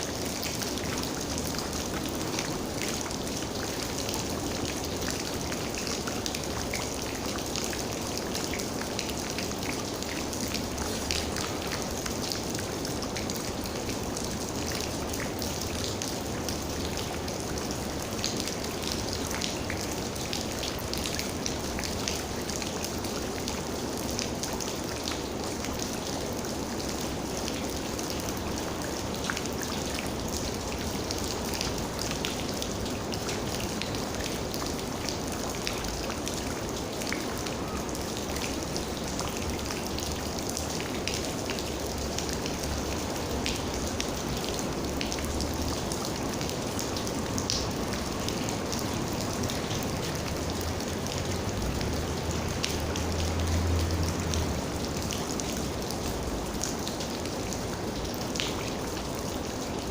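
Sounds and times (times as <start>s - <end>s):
rain falling: 0.0s - 59.9s
raindrops tapping on a surface: 27.4s - 59.0s.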